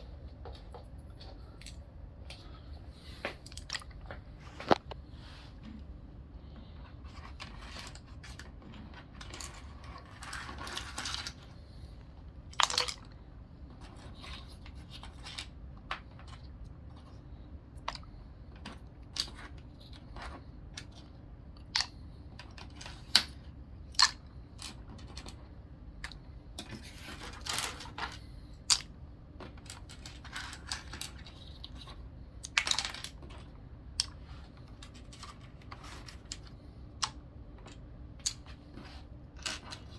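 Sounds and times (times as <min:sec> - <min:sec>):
scraping or rustling: 0:06.5 - 0:11.7.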